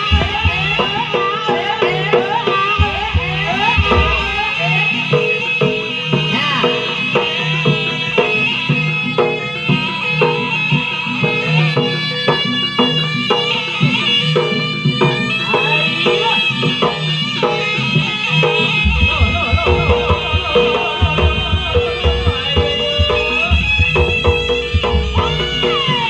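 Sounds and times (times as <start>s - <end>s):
drums beating: 0.0s - 8.8s, 18.0s - 26.0s
reedy shawm melody: 0.0s - 26.0s
struck gongs: 18.8s - 26.0s.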